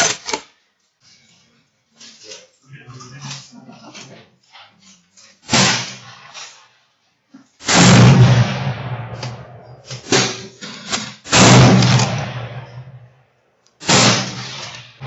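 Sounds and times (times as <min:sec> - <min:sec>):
gunshots: 0:05.5 - 0:06.3, 0:07.6 - 0:13.2, 0:13.8 - 0:15.0.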